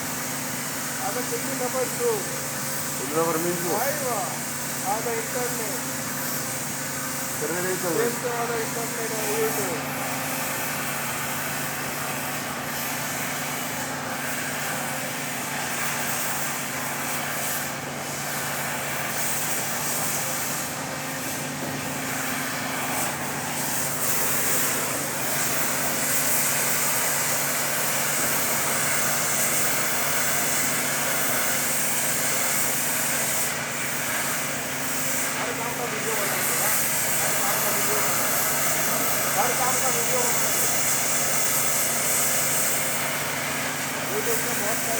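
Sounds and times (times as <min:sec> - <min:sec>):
strong even hiss: 0:00.0 - 0:44.9.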